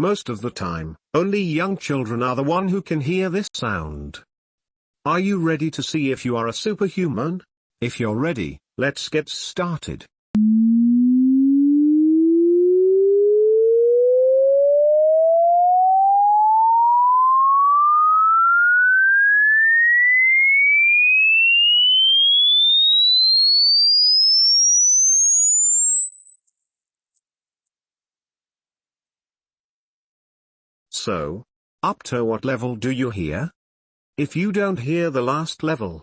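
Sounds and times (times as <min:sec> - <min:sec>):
sine-wave tone sweeping upward: 0:10.4 - 0:29.3.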